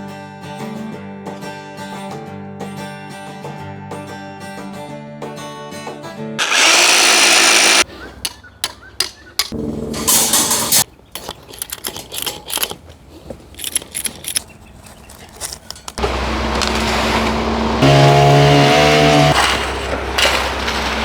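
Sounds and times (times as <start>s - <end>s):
tools knocking and clicking: 8.2s - 16.0s
machine engine running: 16.0s - 21.0s.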